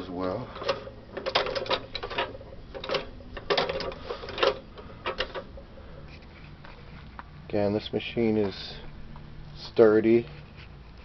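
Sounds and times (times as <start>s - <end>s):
treadle sewing machine clattering: 0.6s - 5.4s.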